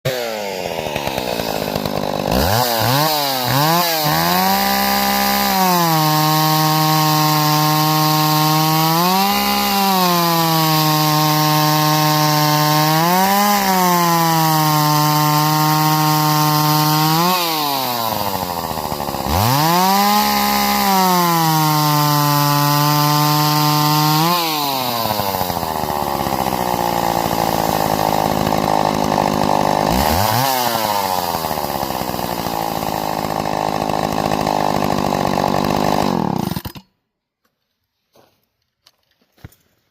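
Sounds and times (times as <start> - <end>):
chainsaw engine revving and idling: 0.0 - 36.9.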